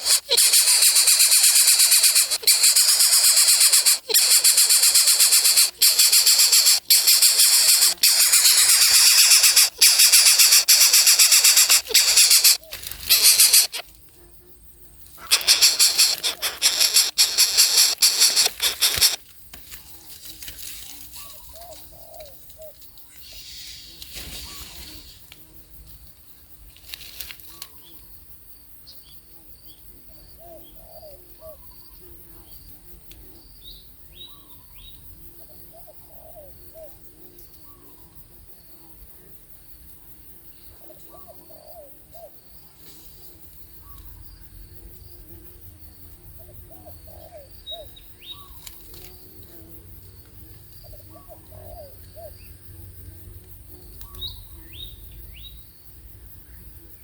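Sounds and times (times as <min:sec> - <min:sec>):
birds calling: 0:00.0 - 0:13.8, 0:15.2 - 0:19.2
thin high chirps: 0:00.0 - 0:13.8, 0:15.3 - 0:19.2.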